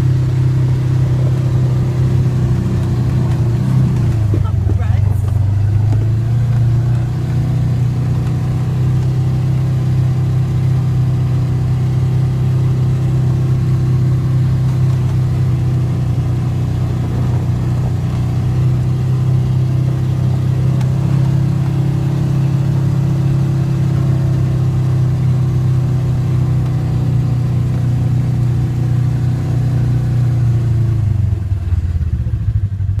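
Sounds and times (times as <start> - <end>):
atv engine running: 0.0 - 33.0.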